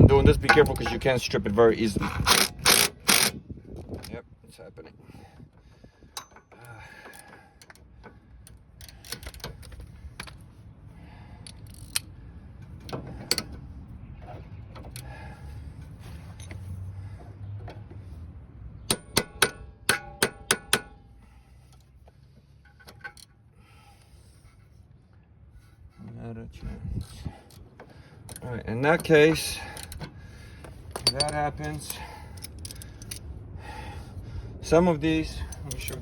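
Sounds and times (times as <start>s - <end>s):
hand tools clinking and scraping: 0.1s - 3.3s, 14.2s - 16.9s, 21.6s - 23.4s, 27.0s - 33.3s, 35.2s - 36.0s.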